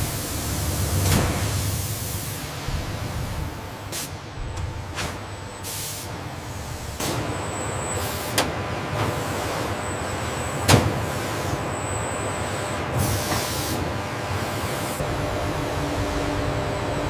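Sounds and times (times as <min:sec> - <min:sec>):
factory machinery: 0:00.0 - 0:17.0.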